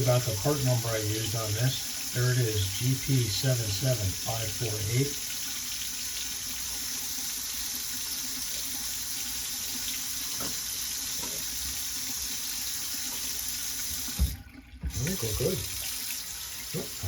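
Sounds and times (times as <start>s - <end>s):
sink faucet running water: 0.0s - 17.0s.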